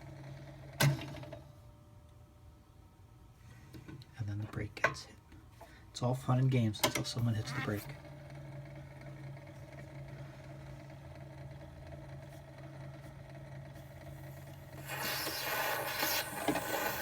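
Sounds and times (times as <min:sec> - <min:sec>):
turntable mechanism humming: 0:06.6 - 0:17.0
scraping hiss: 0:14.7 - 0:17.0.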